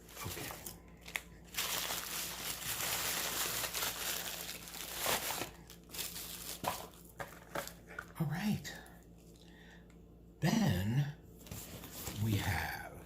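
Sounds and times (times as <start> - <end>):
packaging crinkling: 0.0 - 7.8.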